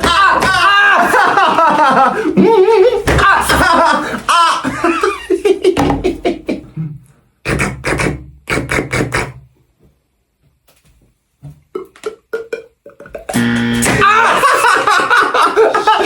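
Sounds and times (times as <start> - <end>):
beatboxing mouth percussion: 6.6 - 9.6, 11.7 - 13.6.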